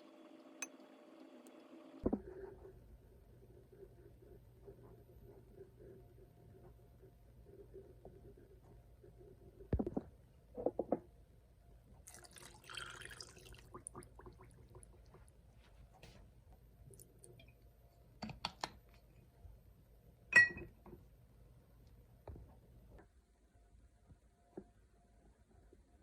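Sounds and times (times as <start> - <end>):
running water: 12.1 - 15.3.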